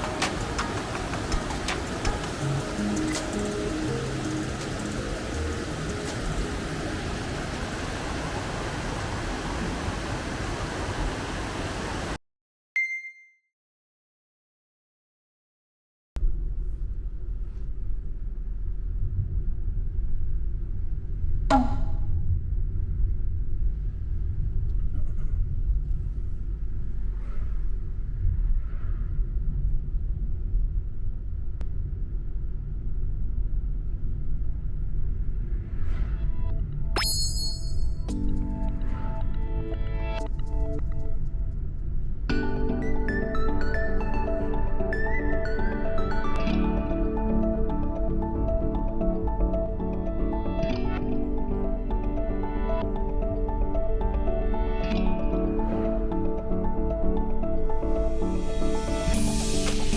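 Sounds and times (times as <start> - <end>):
car road and engine rumble: 0.0 - 12.1
stream water rushing: 0.0 - 12.2
bright chime: 37.0 - 38.1.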